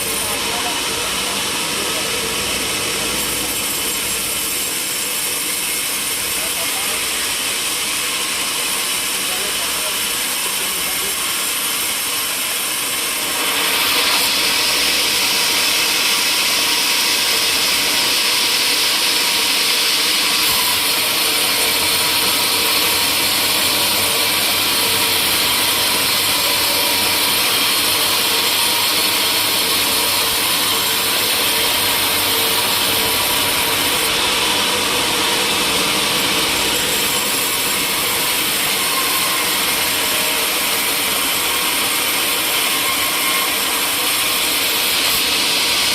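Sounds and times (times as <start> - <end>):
sawmill saw cutting timber: 0.0 - 45.9.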